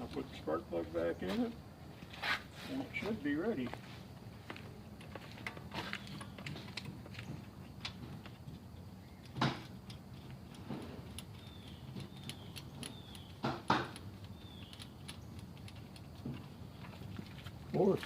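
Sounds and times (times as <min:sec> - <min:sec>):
small metallic clicks: 0:07.8 - 0:17.0.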